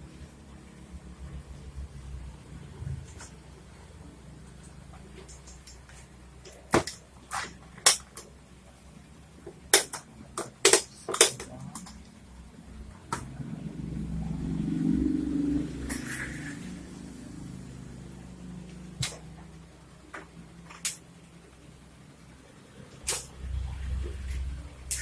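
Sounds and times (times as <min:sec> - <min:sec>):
low hum: 0:12.0 - 0:25.0.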